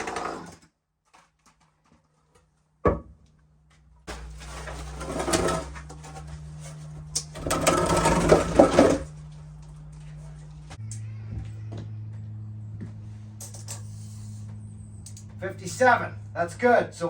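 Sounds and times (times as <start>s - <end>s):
chainsaw running: 7.2s - 9.2s.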